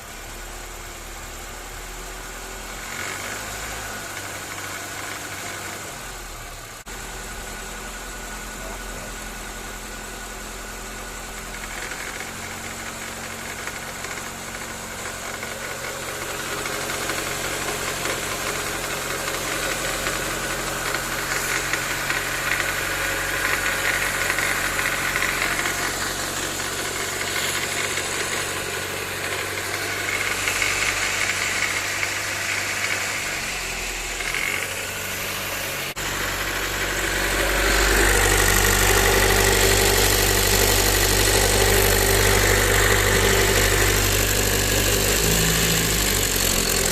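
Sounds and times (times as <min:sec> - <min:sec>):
car engine running at low revs: 0:00.0 - 0:46.9
belt tensioner vibrating rattle: 0:11.4 - 0:33.4.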